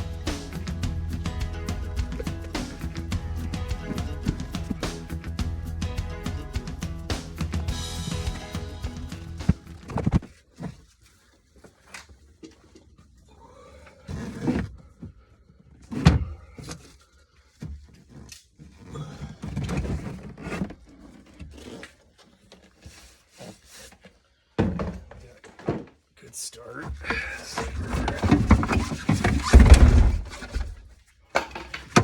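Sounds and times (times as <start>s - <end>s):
knocks and thumps: 0.0s - 10.3s, 26.9s - 32.0s
scraping: 27.0s - 31.1s.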